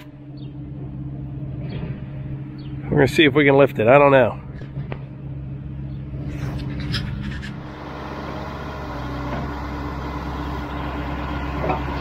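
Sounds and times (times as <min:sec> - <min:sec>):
machine engine running: 0:04.4 - 0:12.0.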